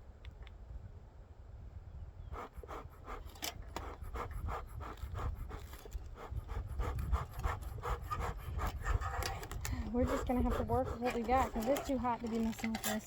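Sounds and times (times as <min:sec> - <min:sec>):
bellows puffing air: 0:02.2 - 0:12.4.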